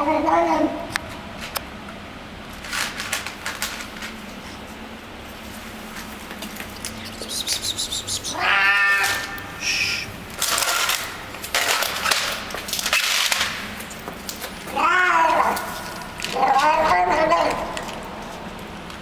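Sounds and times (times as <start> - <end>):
cat eating noisily: 2.7 - 18.8
cat meow-like cries: 8.3 - 9.5, 14.7 - 17.4.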